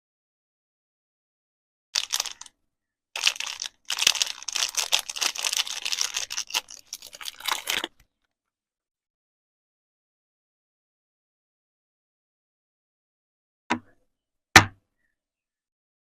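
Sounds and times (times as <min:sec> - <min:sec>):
packaging crinkling: 0:02.0 - 0:02.5, 0:03.2 - 0:08.1.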